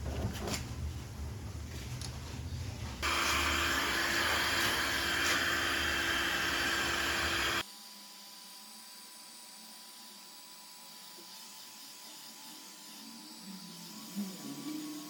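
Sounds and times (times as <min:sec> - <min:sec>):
machine hissing and whirring: 0:03.0 - 0:07.6.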